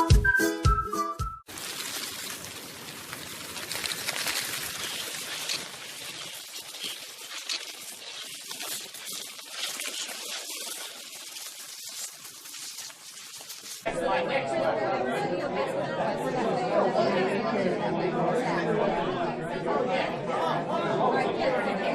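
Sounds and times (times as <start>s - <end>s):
running water splashing: 1.5s - 13.9s.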